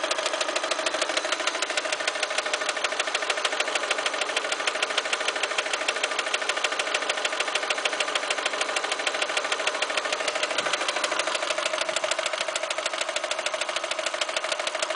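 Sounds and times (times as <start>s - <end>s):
car engine idling with knock: 0.0s - 14.9s.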